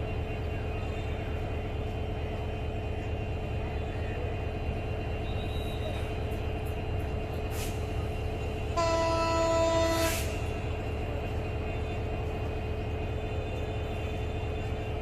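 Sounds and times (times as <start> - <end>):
train rumbling on rails: 0.0 - 15.0
locomotive horn blast: 8.7 - 10.6.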